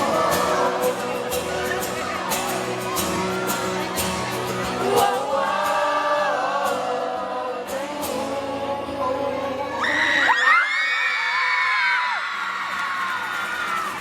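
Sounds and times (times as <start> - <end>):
men singing pop song: 0.0 - 2.3, 4.6 - 10.6
backing band: 0.0 - 9.3.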